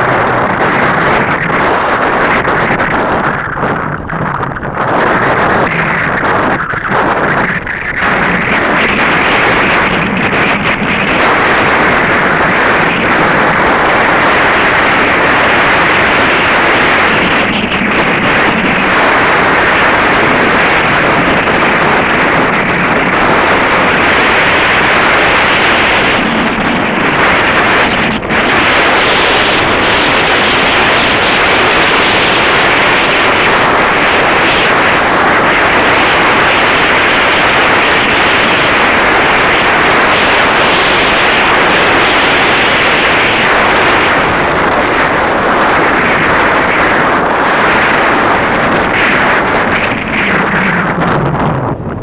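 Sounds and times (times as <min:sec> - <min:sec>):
wind buffeting microphone: 0:00.0 - 0:52.0.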